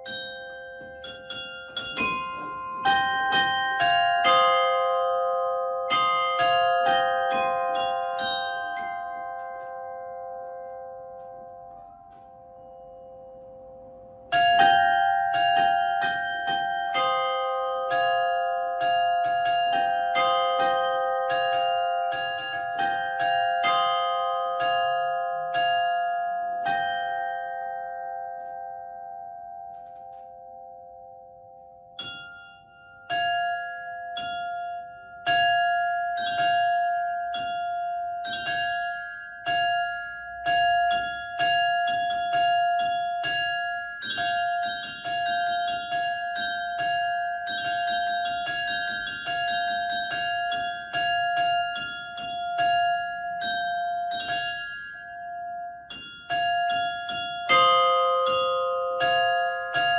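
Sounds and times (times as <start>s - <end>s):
small bells striking quickly: 0.0s - 10.0s, 32.0s - 59.9s.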